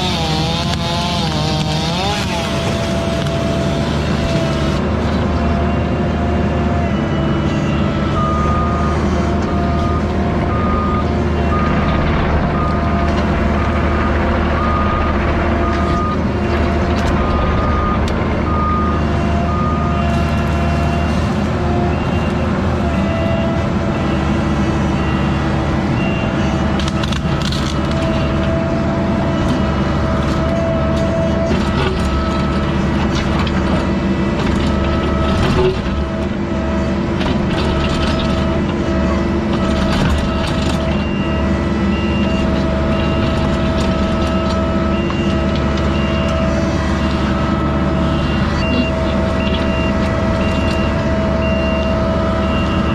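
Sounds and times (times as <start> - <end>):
diesel engines running: 0.0 - 52.9
backup alarm beeping: 9.6 - 21.3, 39.6 - 52.9.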